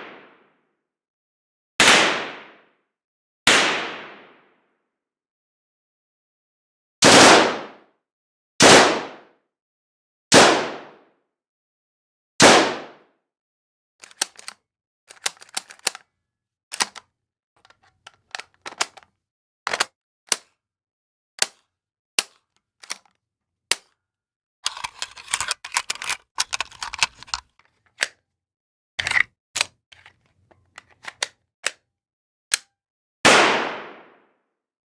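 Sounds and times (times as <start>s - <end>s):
sharp metallic clicks: 19.7s - 19.9s, 24.7s - 28.1s.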